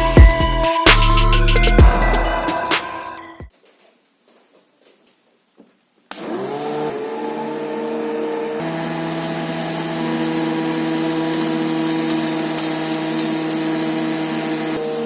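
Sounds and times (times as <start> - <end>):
small motor whining: 6.1 - 15.0.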